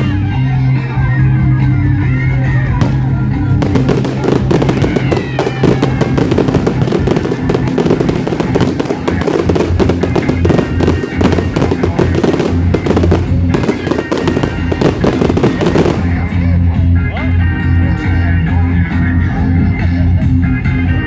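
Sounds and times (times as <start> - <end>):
loud music with heavy bass: 0.0 - 21.0
fireworks crackling and popping: 2.8 - 16.3.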